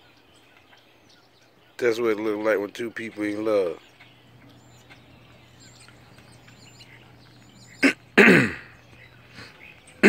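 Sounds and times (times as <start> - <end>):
faint bird chirps: 0.0 - 10.0
low steady hum: 3.7 - 10.0
man's throaty groan: 7.8 - 8.7.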